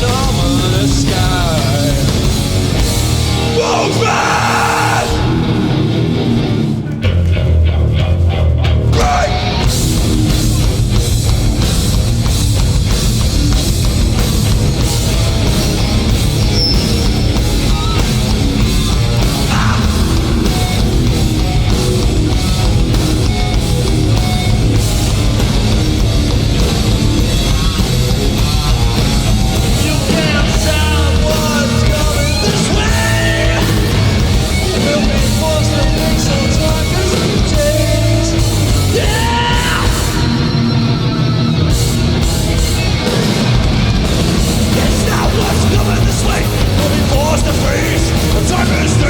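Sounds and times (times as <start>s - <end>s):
punk band playing: 0.0s - 49.0s
shouted vocals: 3.3s - 5.8s, 8.9s - 9.6s, 19.2s - 20.8s, 28.4s - 41.1s.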